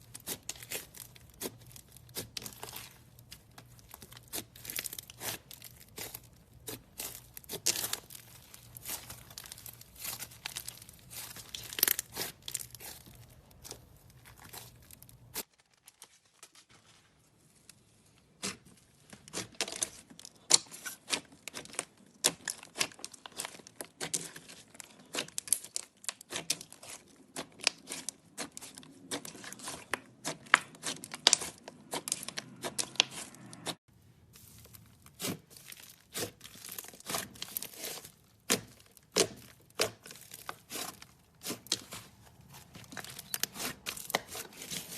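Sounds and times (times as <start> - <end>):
slime crackling and popping: 0.0 - 16.0, 34.3 - 44.9.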